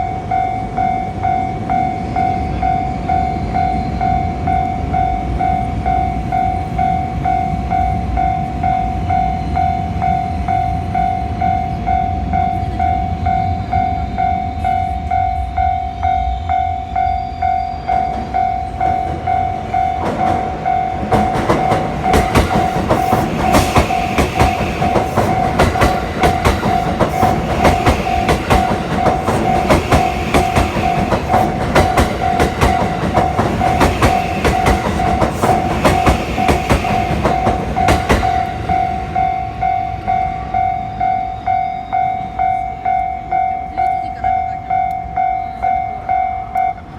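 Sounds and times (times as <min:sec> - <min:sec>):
train wheels clacking over rail joints: 0:18.0 - 0:39.4.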